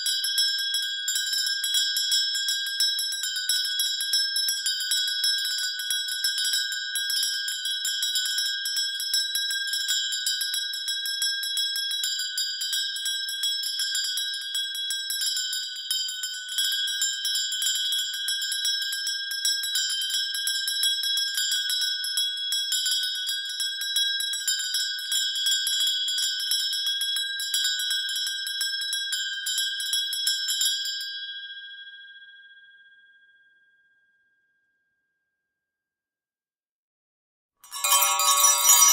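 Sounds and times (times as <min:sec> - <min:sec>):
small metal bell ringing rapidly: 0:37.6 - 0:38.9.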